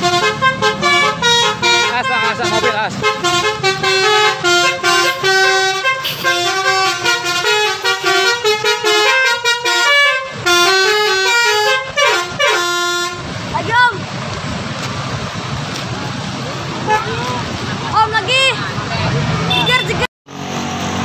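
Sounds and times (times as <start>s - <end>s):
musical air horn tune: 0.0s - 13.2s.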